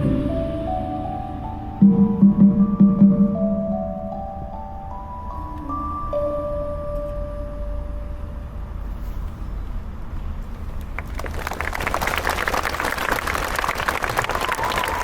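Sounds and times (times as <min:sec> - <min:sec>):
song held notes: 0:00.0 - 0:08.7
low hum of hall: 0:00.0 - 0:15.0
audience applause: 0:10.9 - 0:15.0.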